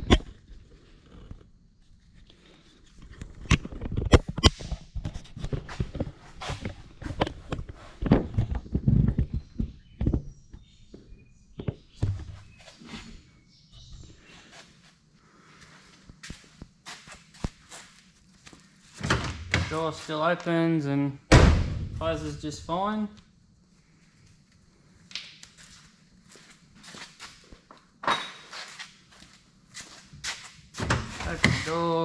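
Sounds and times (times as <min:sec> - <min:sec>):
footsteps and shuffling: 0:13.8 - 0:20.6, 0:25.4 - 0:27.8, 0:28.4 - 0:32.0.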